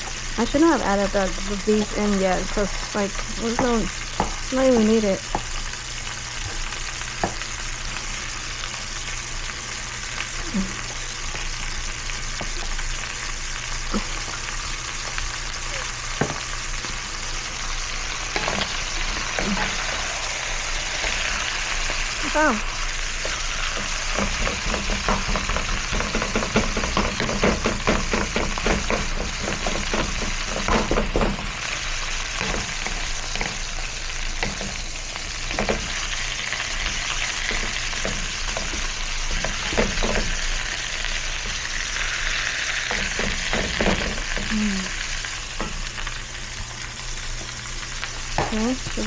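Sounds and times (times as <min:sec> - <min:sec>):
meat sizzling in a pan: 0:00.0 - 0:49.0
utensil scraping a pan: 0:22.8 - 0:44.5.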